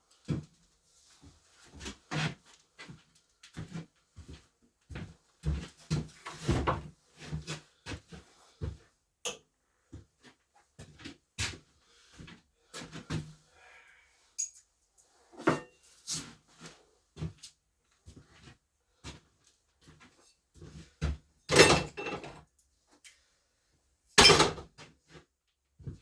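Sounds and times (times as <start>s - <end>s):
objects knocking and clunking: 21.0s - 22.5s, 24.2s - 24.8s.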